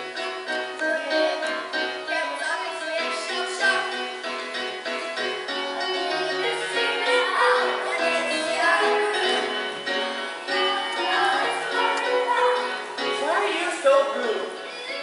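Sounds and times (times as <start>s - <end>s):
instrumental accompaniment: 0.0s - 15.0s
woman singing: 10.5s - 12.8s.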